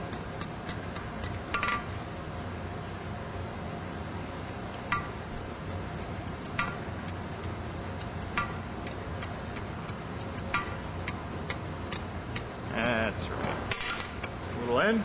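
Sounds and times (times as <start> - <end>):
steady background hum: 0.0 - 15.0
light ticking hammer taps: 5.7 - 13.0.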